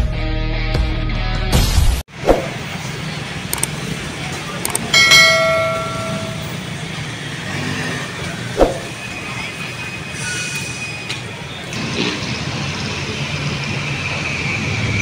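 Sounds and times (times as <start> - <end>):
city street traffic: 2.1 - 15.0
metallic ring: 4.7 - 6.6.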